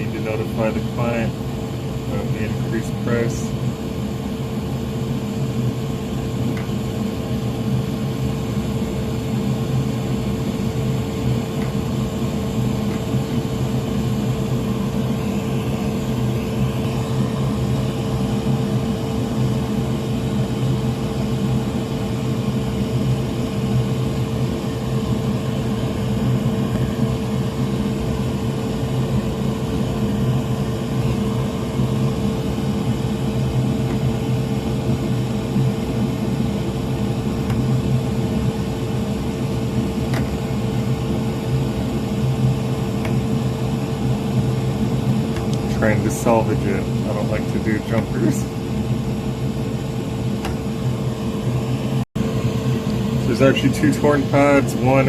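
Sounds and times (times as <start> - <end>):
electric fan whirring: 0.0 - 55.0.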